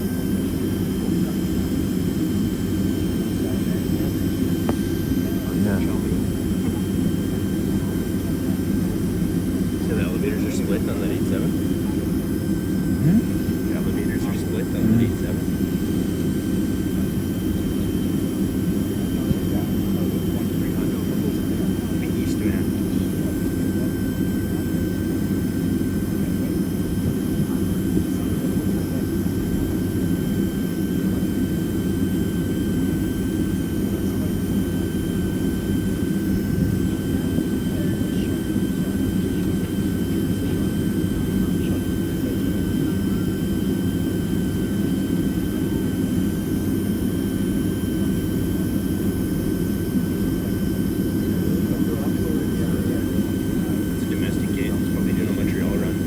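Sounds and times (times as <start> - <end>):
high jet engine whine: 0.0 - 56.0
low cabin rumble: 51.2 - 56.0.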